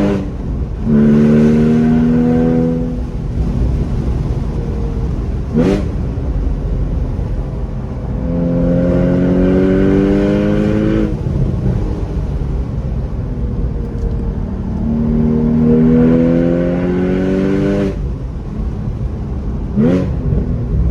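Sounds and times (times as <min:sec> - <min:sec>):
car engine accelerating: 0:00.0 - 0:20.9
road rumble: 0:00.0 - 0:20.9.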